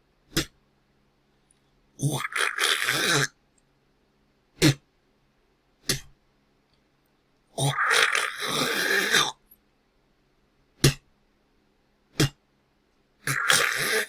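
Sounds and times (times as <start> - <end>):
person spitting: 2.0 - 3.4, 4.6 - 4.8, 7.6 - 9.4, 13.2 - 14.0
person clearing throat: 4.6 - 4.8, 13.3 - 14.0.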